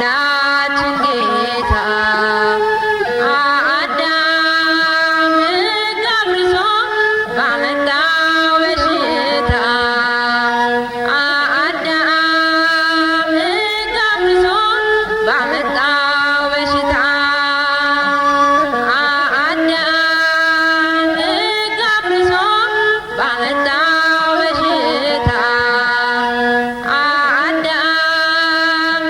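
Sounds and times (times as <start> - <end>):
person singing a slow religious song: 0.0 - 6.6, 7.4 - 14.6, 23.0 - 29.0.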